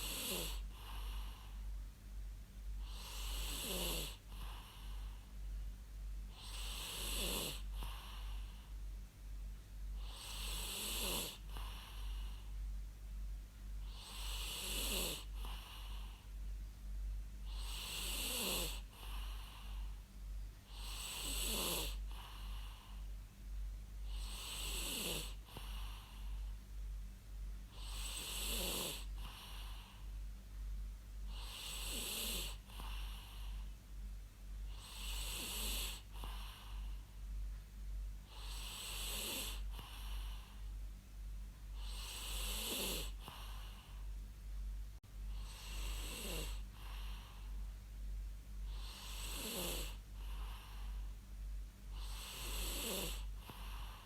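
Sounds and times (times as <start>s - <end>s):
person snoring raspily: 0.0s - 1.4s, 2.8s - 4.9s, 6.4s - 8.4s, 10.0s - 12.2s, 13.9s - 16.0s, 17.5s - 19.7s, 20.7s - 22.8s, 24.1s - 26.2s, 27.7s - 29.8s, 31.3s - 33.4s, 34.7s - 36.8s, 38.3s - 40.4s, 41.8s - 43.8s, 45.3s - 47.2s, 48.7s - 50.8s, 52.0s - 54.0s
steady low hum: 0.0s - 54.0s.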